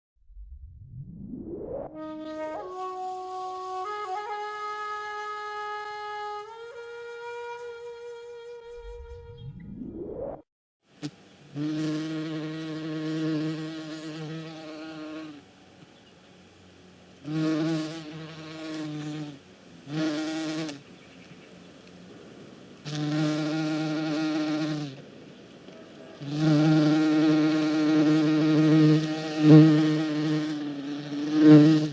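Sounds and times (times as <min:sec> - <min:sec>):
bee buzzing: 0:02.6 - 0:09.1, 0:11.0 - 0:16.1, 0:17.2 - 0:21.7, 0:22.8 - 0:25.1, 0:26.2 - 0:31.9.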